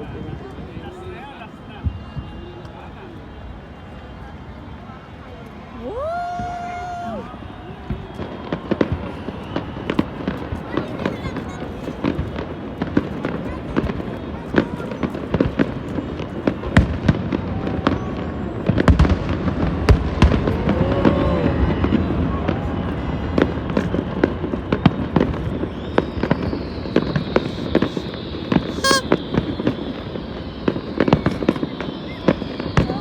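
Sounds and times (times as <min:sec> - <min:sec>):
fireworks bangs and crackling: 0:07.6 - 0:33.0
thin high tone: 0:28.7 - 0:29.1.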